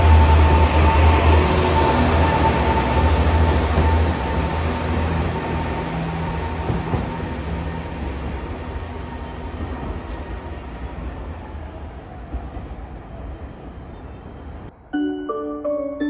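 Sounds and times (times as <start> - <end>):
train rumbling past: 0.0 - 16.0
music with mallet-like notes: 15.0 - 16.0.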